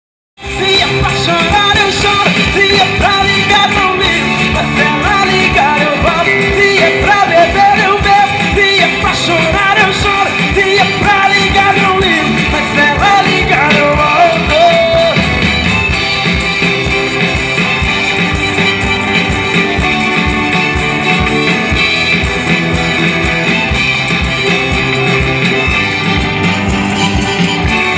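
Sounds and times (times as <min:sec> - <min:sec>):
person singing: 0:00.4 - 0:22.3
band playing guitar and drums: 0:00.4 - 0:27.9.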